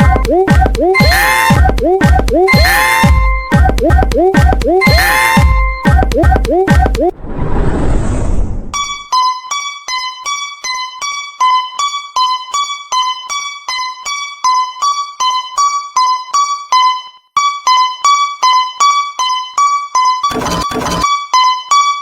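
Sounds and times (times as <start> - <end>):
noisy whoosh: 7.0 - 9.0.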